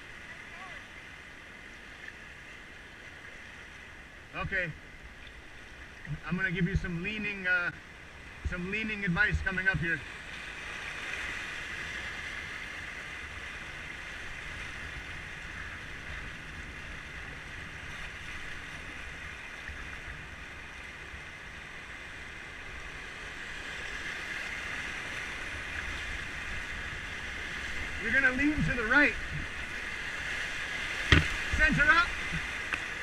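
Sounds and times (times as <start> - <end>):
river whitewater rushing: 22.5 - 33.0.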